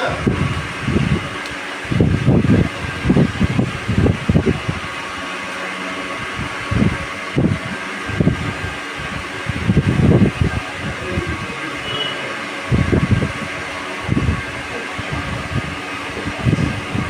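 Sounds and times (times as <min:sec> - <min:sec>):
fan running: 0:00.0 - 0:17.0.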